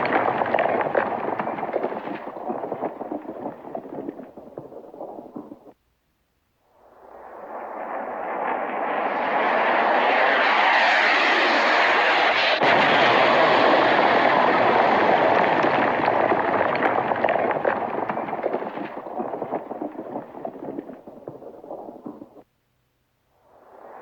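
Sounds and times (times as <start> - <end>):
missile rushing roar: 7.1 - 16.6.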